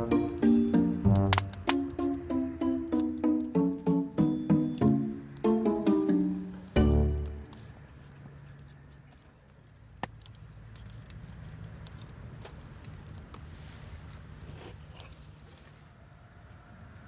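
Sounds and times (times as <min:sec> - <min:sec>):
campfire crackling: 0:00.0 - 0:08.7.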